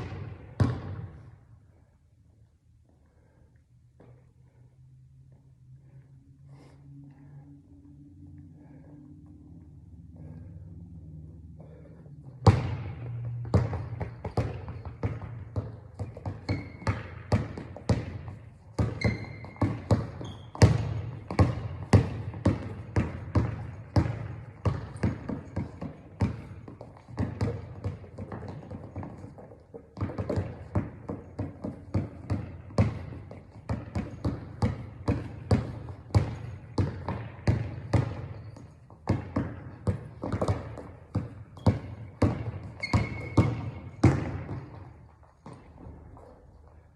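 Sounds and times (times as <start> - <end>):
basketball dribbling on hard floor: 0.0 - 1.3, 11.6 - 46.5.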